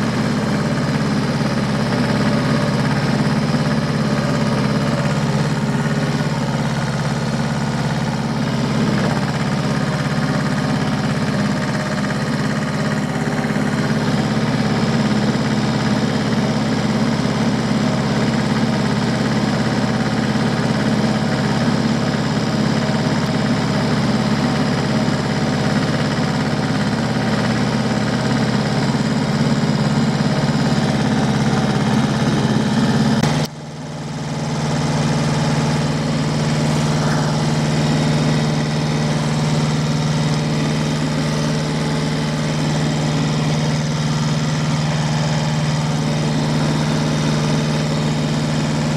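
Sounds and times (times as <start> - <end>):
diesel tractor engine running: 0.0 - 48.9.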